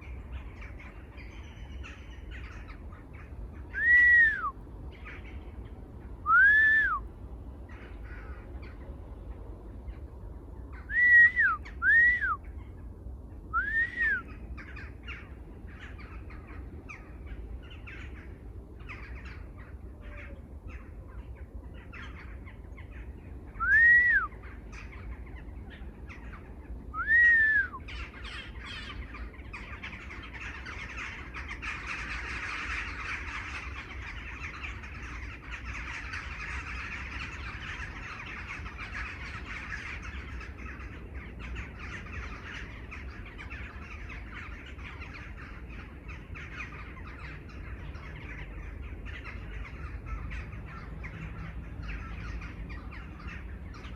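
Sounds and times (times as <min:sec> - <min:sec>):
birds chattering chorus: 0:00.0 - 0:53.9
bird whistled note: 0:03.8 - 0:04.5, 0:06.3 - 0:07.0, 0:10.9 - 0:12.4, 0:13.5 - 0:14.3, 0:23.6 - 0:24.3, 0:27.0 - 0:27.8.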